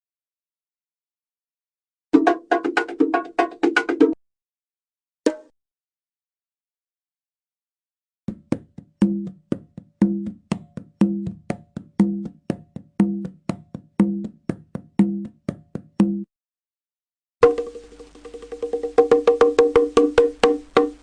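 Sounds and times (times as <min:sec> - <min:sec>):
pitched drum hits with taps: 0:08.3 - 0:16.3, 0:17.4 - 0:21.0
faint hiss: 0:17.4 - 0:21.0
higher-pitched drum strokes: 0:17.4 - 0:21.0.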